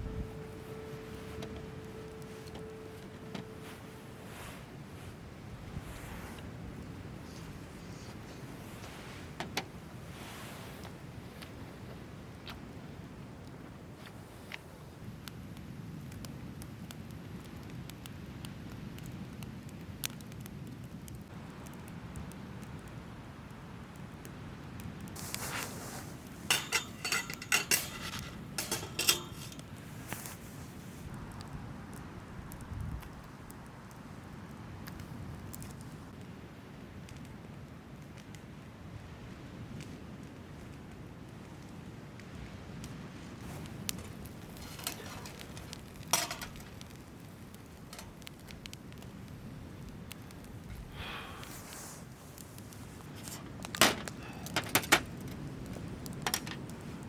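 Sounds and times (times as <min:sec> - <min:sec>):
soft rustle: 0:00.0 - 0:12.7, 0:25.0 - 0:31.2, 0:43.1 - 0:57.0
light clicks and clinks: 0:26.4 - 0:30.4, 0:43.4 - 0:47.0, 0:53.2 - 0:56.7
dishes and utensils clinking: 0:26.5 - 0:29.6, 0:44.5 - 0:46.8.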